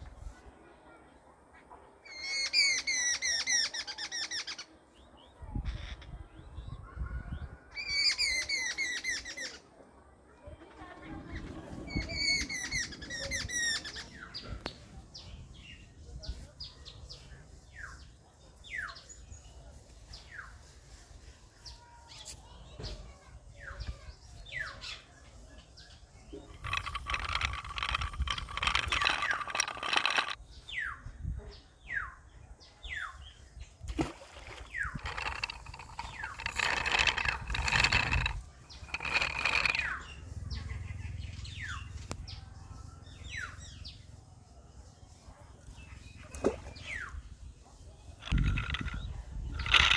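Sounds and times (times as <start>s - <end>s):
birds chirping falling calls: 11.2s - 15.9s, 25.8s - 31.0s, 34.0s - 42.4s, 48.2s - 49.9s.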